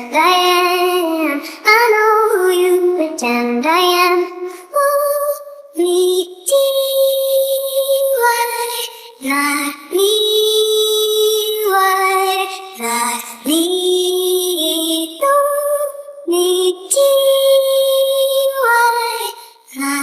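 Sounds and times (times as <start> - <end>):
high-pitched female vocal singing: 0.0 - 20.0
singer breathing: 1.4 - 1.7, 4.4 - 4.8, 8.8 - 9.2, 19.3 - 19.7.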